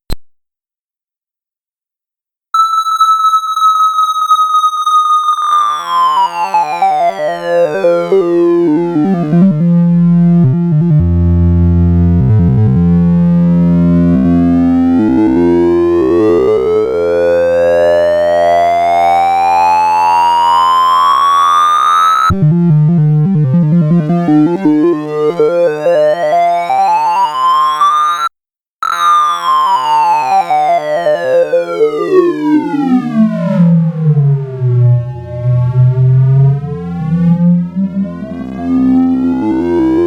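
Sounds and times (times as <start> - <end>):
synthesizer tones changing pitch: 13.6 - 22.6, 24.9 - 40.0.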